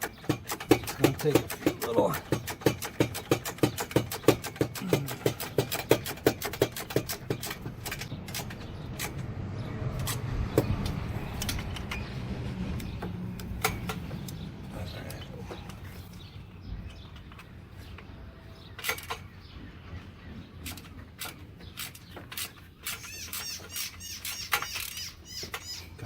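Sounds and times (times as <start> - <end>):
hand ratchet clicking: 0.0 - 9.2, 20.6 - 25.8
low hum: 7.8 - 17.4.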